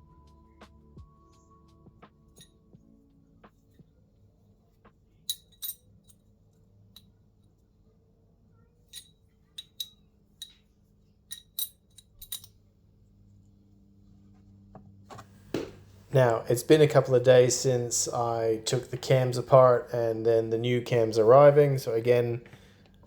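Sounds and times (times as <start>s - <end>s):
metal parts clinking: 5.3s - 6.2s, 8.9s - 10.6s, 11.3s - 12.6s.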